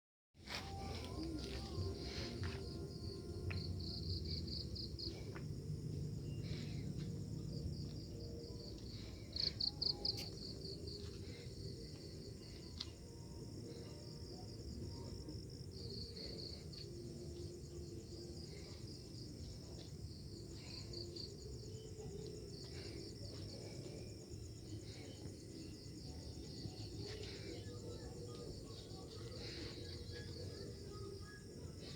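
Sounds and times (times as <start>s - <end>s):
crickets chirping: 0.4s - 31.9s.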